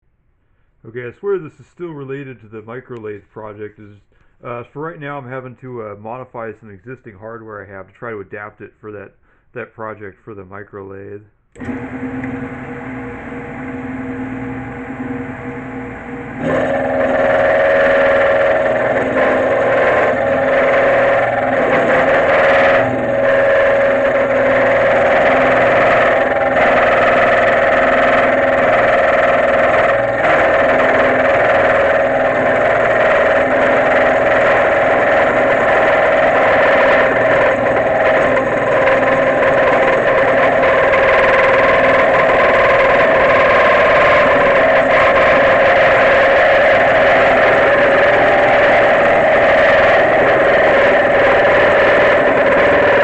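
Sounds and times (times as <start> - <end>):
machine tool motor running: 11.6 - 53.0
cutter machining metal with ringing: 16.4 - 53.0.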